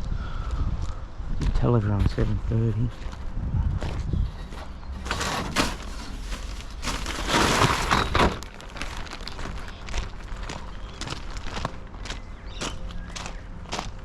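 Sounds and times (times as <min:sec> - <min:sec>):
crunching and rustling handling: 0:02.8 - 0:14.0.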